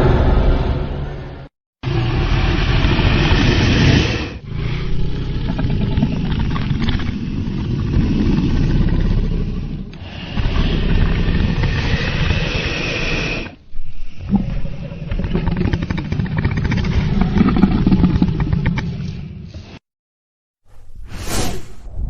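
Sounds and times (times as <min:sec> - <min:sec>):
deep growling creature roars: 0:01.8 - 0:19.4.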